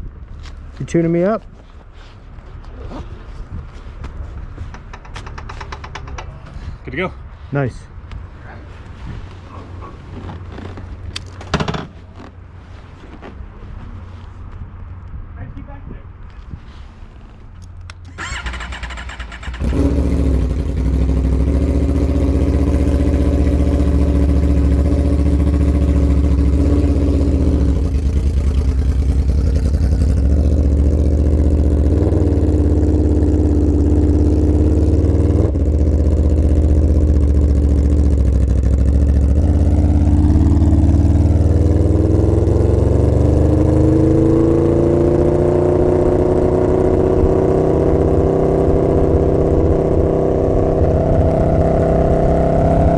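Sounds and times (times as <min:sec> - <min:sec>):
motorcycle engine revving: 0:18.0 - 0:52.9.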